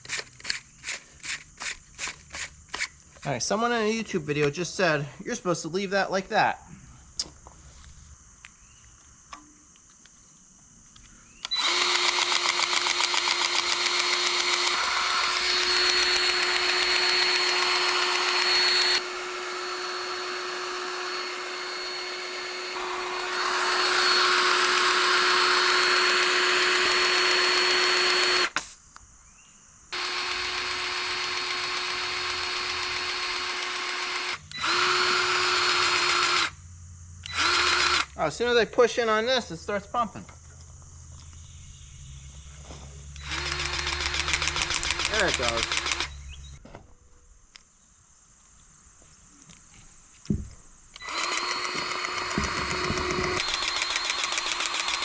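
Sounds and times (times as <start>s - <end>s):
grease gun motor whining: 11.4s - 28.6s, 30.0s - 36.6s, 37.2s - 38.2s, 43.2s - 46.6s, 50.9s - 55.0s.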